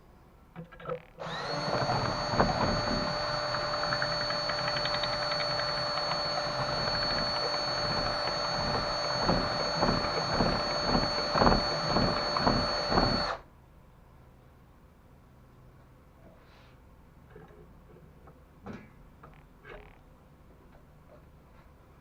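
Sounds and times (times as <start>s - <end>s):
power tool grinding strokes: 1.2s - 13.4s
power tool whining: 1.2s - 13.4s.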